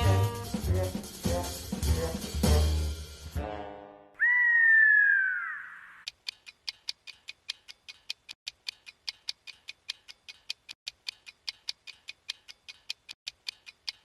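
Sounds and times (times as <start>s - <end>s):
whistle-like tone sliding downward: 4.2s - 6.0s
quick clock-like ticking: 6.1s - 14.0s.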